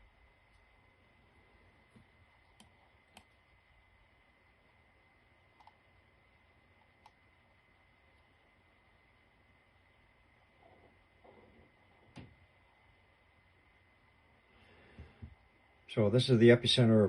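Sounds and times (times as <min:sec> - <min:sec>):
faint high-pitched whine: 0:00.0 - 0:17.0
computer mouse clicks: 0:02.0 - 0:03.6, 0:05.5 - 0:05.8, 0:06.8 - 0:07.2.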